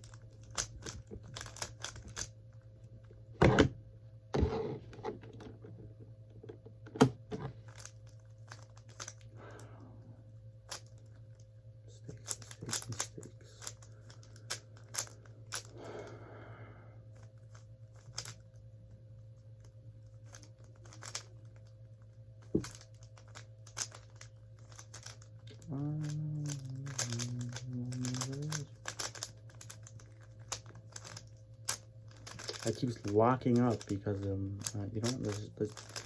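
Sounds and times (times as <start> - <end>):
plastic puzzle cube clicking: 0.4 - 2.3, 20.2 - 21.3, 22.6 - 34.0, 34.6 - 36.0
person humming: 25.5 - 28.7.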